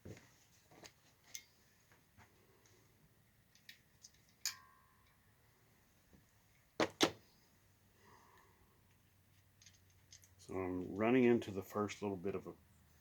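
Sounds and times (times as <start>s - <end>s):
tools and parts clicking: 1.3s - 1.5s, 3.4s - 5.2s, 8.9s - 10.5s
metallic click with ring: 4.4s - 5.2s.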